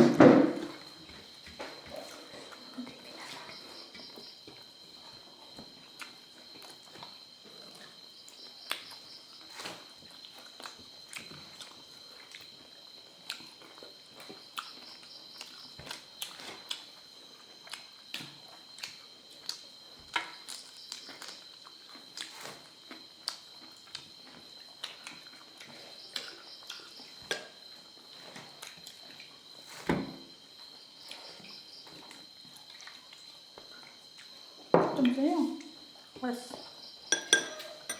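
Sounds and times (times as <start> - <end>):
chewing clicks and smacks: 10.3 - 12.5, 13.2 - 16.9, 17.7 - 27.4.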